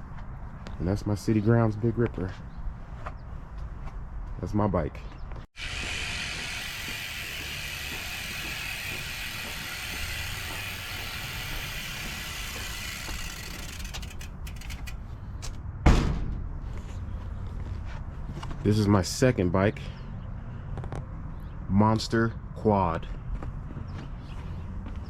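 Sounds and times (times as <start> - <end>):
bicycle freewheel hub ticking: 5.6 - 15.2
sharp loud knock: 15.8 - 16.6.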